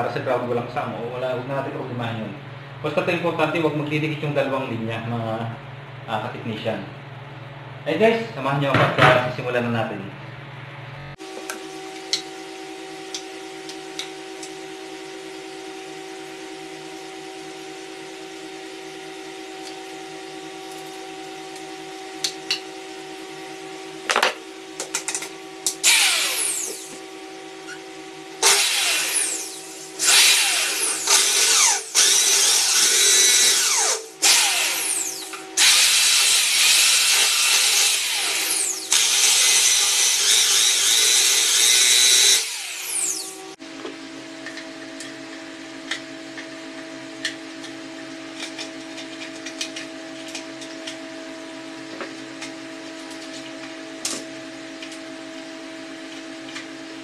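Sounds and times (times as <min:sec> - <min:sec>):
power drill running: 0:25.8 - 0:27.0, 0:28.4 - 0:43.5.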